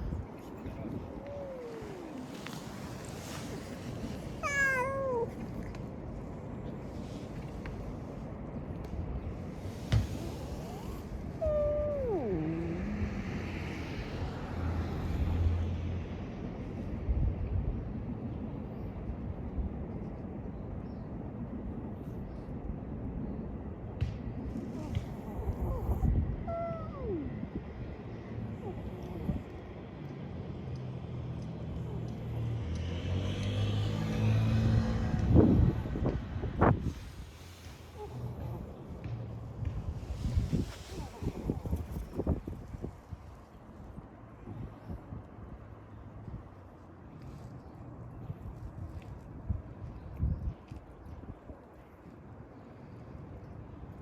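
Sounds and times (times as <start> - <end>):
cat meowing: 4.2 - 5.4, 24.8 - 27.3
vehicle engine hum passing: 9.2 - 18.8, 27.0 - 42.7.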